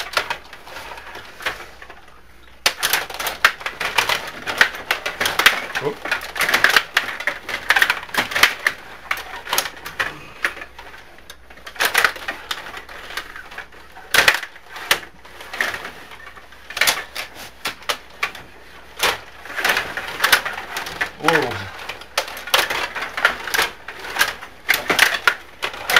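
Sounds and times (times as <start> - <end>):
table hockey plastic clacking: 2.6 - 25.9.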